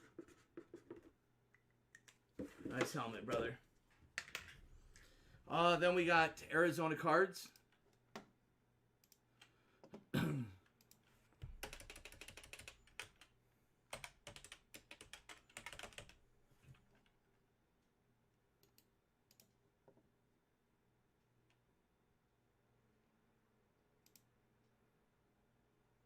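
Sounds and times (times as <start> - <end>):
computer keyboard typing: 10.9 - 16.2.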